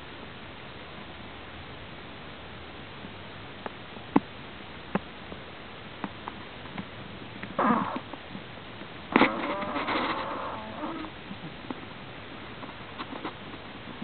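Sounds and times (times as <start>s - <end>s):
prairie dog snoring: 7.6s - 8.2s, 9.1s - 11.2s.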